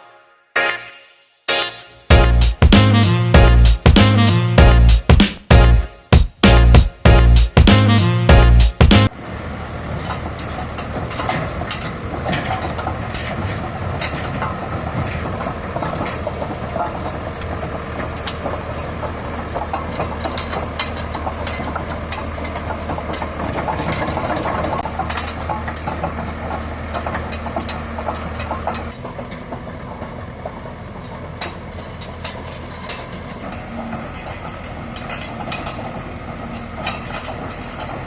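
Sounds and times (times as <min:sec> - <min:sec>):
bulldozer diesel engine running: 0:02.1 - 0:38.0
clicks and clanks of machine: 0:10.0 - 0:29.7, 0:31.0 - 0:38.0.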